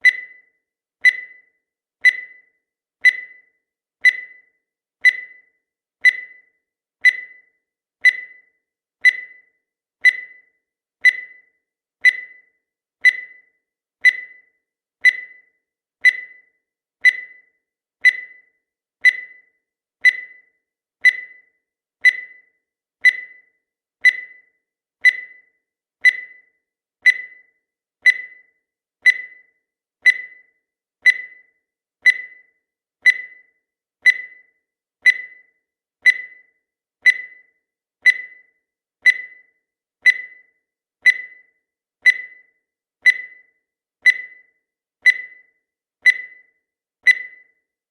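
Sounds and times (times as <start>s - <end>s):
countdown timer beeps: 0.0s - 47.8s.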